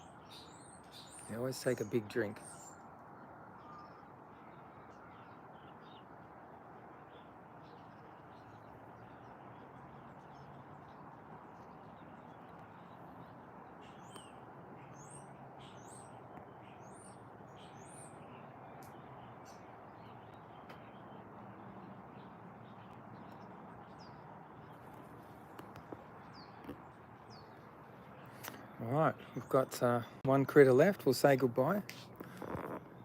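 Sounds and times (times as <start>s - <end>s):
faint high bird chirps: 3.5s - 6.1s.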